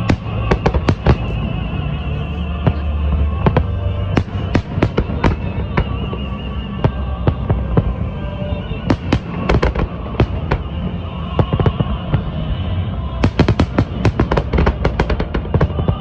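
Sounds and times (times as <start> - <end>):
fireworks exploding: 0.0 - 1.7, 3.4 - 6.0.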